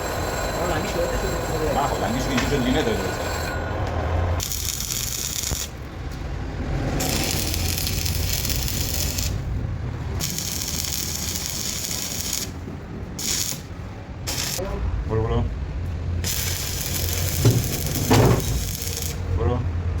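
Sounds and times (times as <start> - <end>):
hissing bursts: 10.2 - 12.6, 13.2 - 14.6, 16.2 - 19.3.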